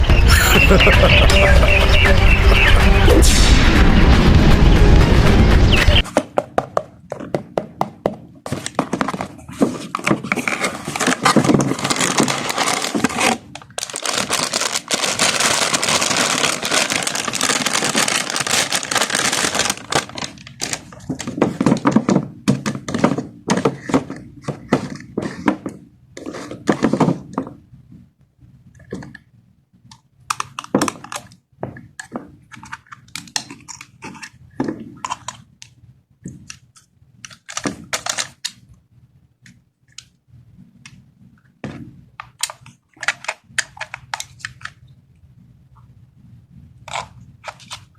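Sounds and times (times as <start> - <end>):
plastic wrap and cardboard crinkling: 8.5 - 27.2.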